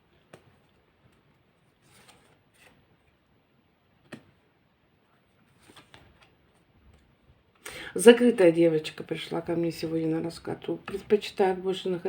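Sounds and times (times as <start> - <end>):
cards rustling and clicking: 1.8 - 2.8, 5.5 - 7.0.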